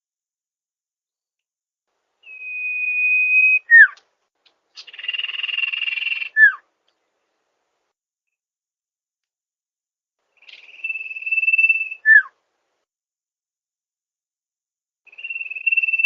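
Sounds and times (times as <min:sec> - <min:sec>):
bird whistle: 0:02.2 - 0:04.0, 0:04.8 - 0:06.6, 0:10.4 - 0:12.4, 0:15.1 - 0:16.0
buzzy rattling bird trill: 0:04.7 - 0:06.5.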